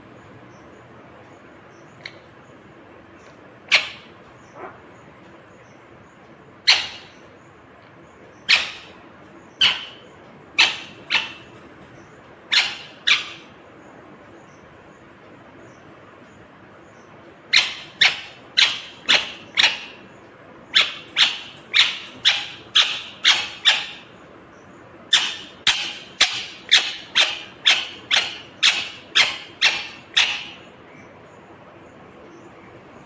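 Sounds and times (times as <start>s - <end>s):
parakeet shrill calls: 3.7s - 4.8s, 6.6s - 7.3s, 8.4s - 9.0s, 9.6s - 13.5s, 17.5s - 20.1s, 20.7s - 24.1s, 25.1s - 31.1s.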